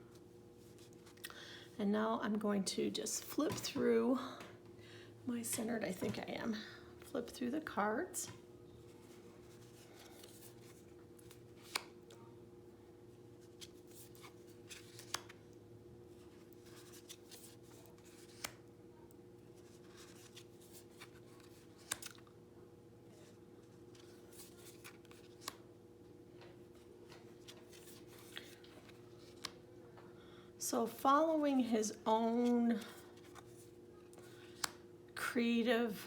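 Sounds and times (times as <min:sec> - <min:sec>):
cards clicking and sliding: 0:10.0 - 0:12.2, 0:13.5 - 0:15.4, 0:16.6 - 0:18.6, 0:19.6 - 0:22.2, 0:34.2 - 0:34.8.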